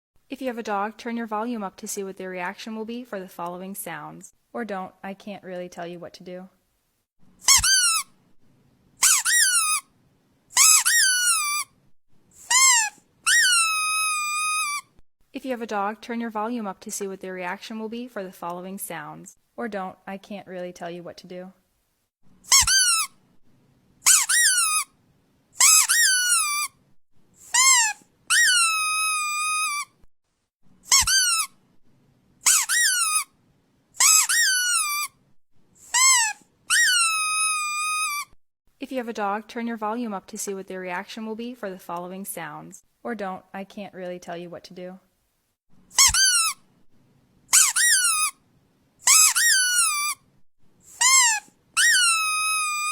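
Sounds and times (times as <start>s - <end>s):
squeaky dog toy squeaking: 7.4s - 8.2s, 9.0s - 9.9s, 10.5s - 11.8s, 12.4s - 15.0s, 22.4s - 23.2s, 24.0s - 24.9s, 25.6s - 26.8s, 27.4s - 30.0s, 30.8s - 31.6s, 32.4s - 33.3s, 34.0s - 35.2s, 35.8s - 38.4s, 45.9s - 46.7s, 47.5s - 48.4s, 49.0s - 50.3s, 50.9s - 52.9s.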